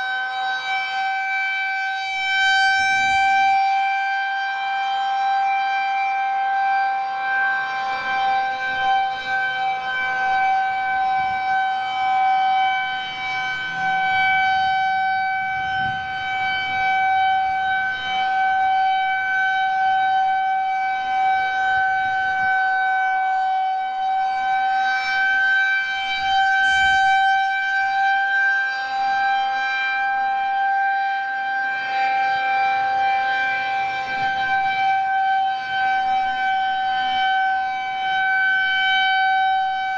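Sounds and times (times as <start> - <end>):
electronic warning siren: 0.0 - 39.9.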